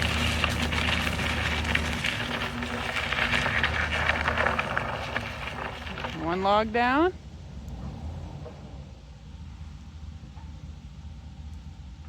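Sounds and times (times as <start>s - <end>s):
tree crackling and snapping: 0.0s - 7.0s
vehicle engine running: 0.0s - 12.0s.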